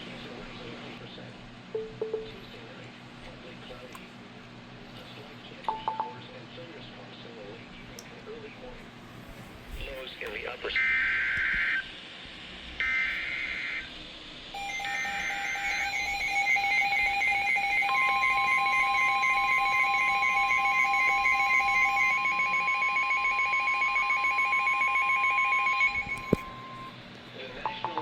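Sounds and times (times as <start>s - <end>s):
steady warning alarm tone: 10.6s - 12.0s, 12.8s - 27.0s
harsh digital data buzzes: 12.8s - 27.0s
rapidly pulsing alert beep: 14.6s - 26.9s.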